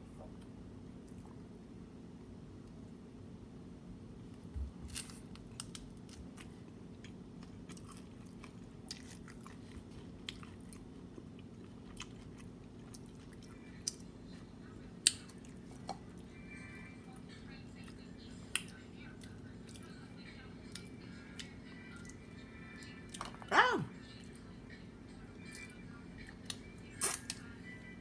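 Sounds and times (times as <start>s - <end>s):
steady low hum: 0.0s - 28.0s
chewing crunchy food: 4.7s - 16.3s, 17.8s - 22.2s.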